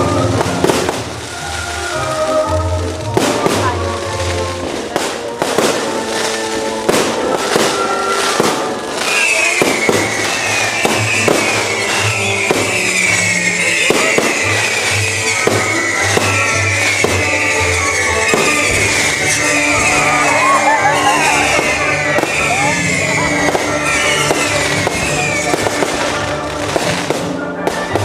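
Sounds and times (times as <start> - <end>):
fireworks bangs and pops: 0.0 - 28.0
music: 0.0 - 28.0
high wavering whistle: 9.0 - 25.9.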